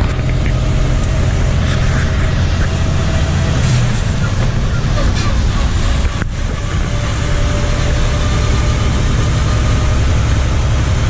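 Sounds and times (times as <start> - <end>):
truck engine rumbling: 0.0 - 11.0.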